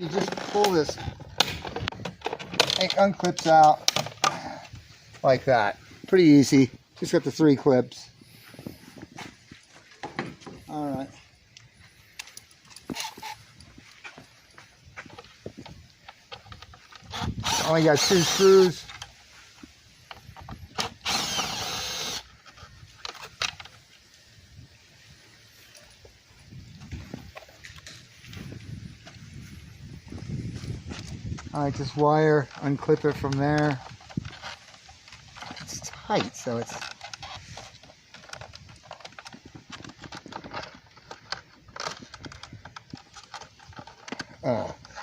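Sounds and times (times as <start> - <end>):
plastic clicks and creaks: 0.0 - 4.8, 9.9 - 13.9, 15.1 - 19.2, 20.0 - 23.9, 30.9 - 45.0
power drill running: 17.1 - 18.8, 20.9 - 22.3.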